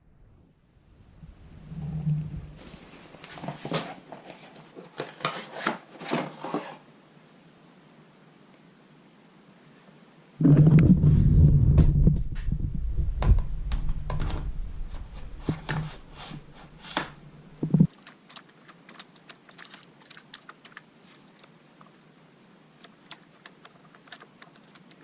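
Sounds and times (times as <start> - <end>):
deep rumble: 1.0 - 2.6, 10.4 - 17.9.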